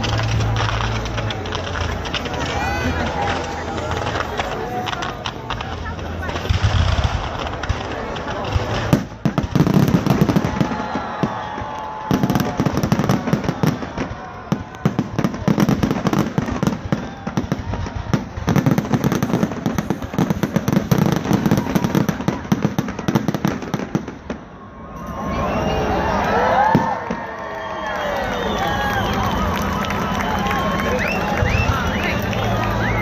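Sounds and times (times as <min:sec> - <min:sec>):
fireworks bangs and crackling: 0:00.0 - 0:33.0.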